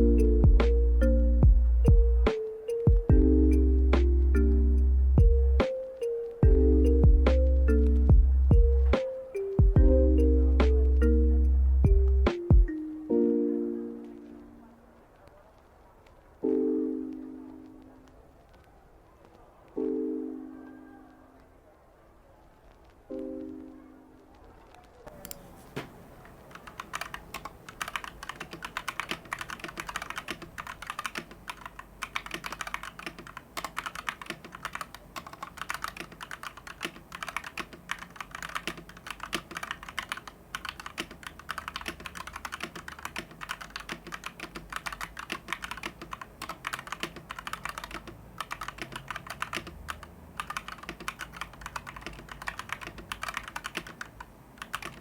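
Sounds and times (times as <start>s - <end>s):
mechanical keyboard keystrokes clacking: 25.1s - 55.0s.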